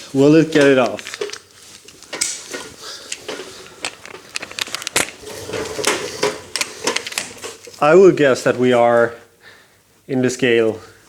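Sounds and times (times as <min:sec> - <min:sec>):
tools clinking against metal: 0:00.4 - 0:07.8.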